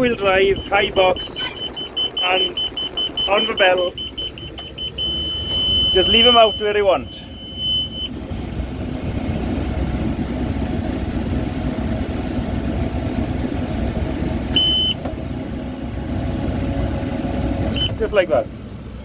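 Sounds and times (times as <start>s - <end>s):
high electronic beep: 0.0s - 8.1s
tractor engine running: 0.0s - 19.0s.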